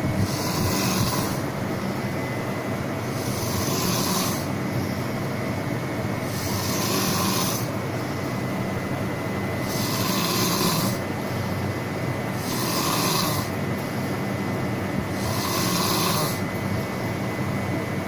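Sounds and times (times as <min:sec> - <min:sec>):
steady hum: 0:00.0 - 0:18.0
person snoring: 0:00.2 - 0:01.4, 0:03.1 - 0:04.5, 0:06.3 - 0:07.7, 0:09.6 - 0:11.0, 0:12.4 - 0:13.5, 0:15.2 - 0:16.4.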